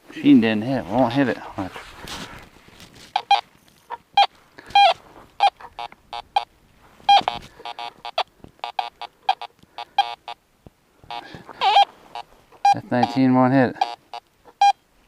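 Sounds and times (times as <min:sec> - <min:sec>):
metal detector chirps: 0:03.1 - 0:03.4, 0:04.2 - 0:10.4, 0:11.1 - 0:13.2, 0:13.8 - 0:14.8.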